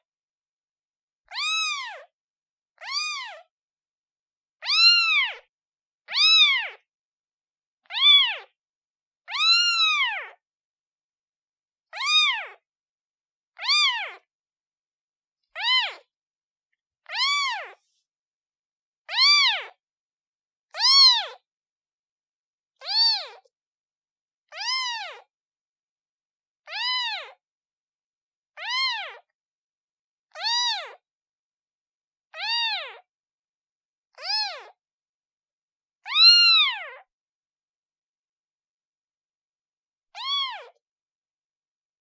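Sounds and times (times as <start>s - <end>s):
kitten meowing: 1.3s - 2.1s, 2.8s - 3.5s, 4.6s - 5.5s, 6.1s - 6.8s, 7.8s - 8.5s, 9.3s - 10.4s, 11.9s - 12.6s, 13.6s - 14.3s, 15.6s - 16.1s, 17.0s - 18.0s, 19.1s - 19.8s, 20.8s - 21.4s, 22.8s - 23.5s, 24.5s - 25.3s, 26.7s - 27.4s, 28.6s - 29.2s, 30.3s - 31.0s, 32.4s - 33.1s, 34.2s - 34.8s, 36.1s - 37.0s, 40.2s - 40.8s.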